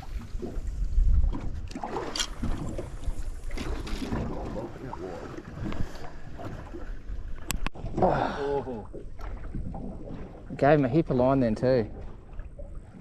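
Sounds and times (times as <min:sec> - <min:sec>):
wind on microphone: 0:00.0 - 0:08.1
water against boat hull: 0:00.0 - 0:13.0.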